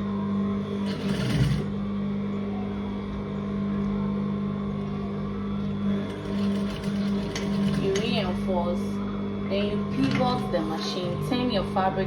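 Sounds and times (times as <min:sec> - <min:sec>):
electric sewing machine running: 0:00.6 - 0:02.0, 0:05.8 - 0:08.5, 0:09.9 - 0:11.7.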